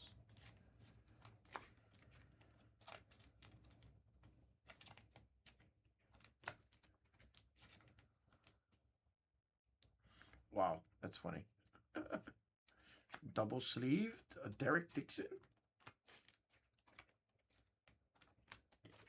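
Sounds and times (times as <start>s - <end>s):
trading cards clicking and rustling: 0.3s - 8.6s, 13.0s - 19.0s.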